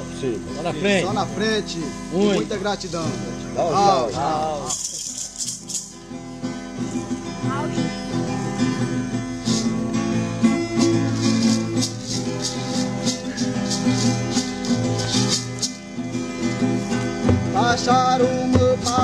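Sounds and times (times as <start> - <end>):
acoustic guitar playing: 0.0 - 19.0
shaker keeping a beat: 2.4 - 6.1, 7.8 - 19.0.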